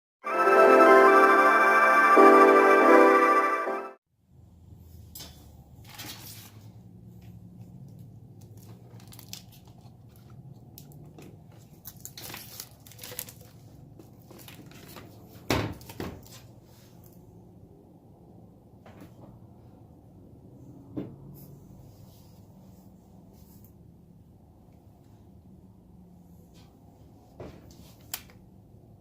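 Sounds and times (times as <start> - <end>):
crinkling and rustling: 5.8 - 17.2.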